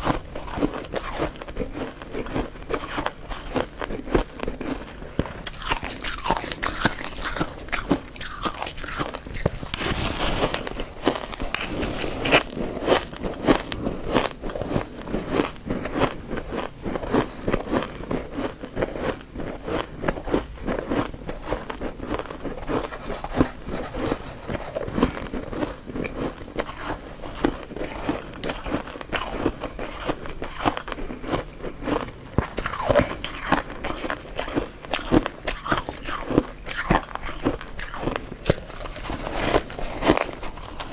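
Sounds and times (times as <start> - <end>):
frost being crunched: 8.4 - 13.2.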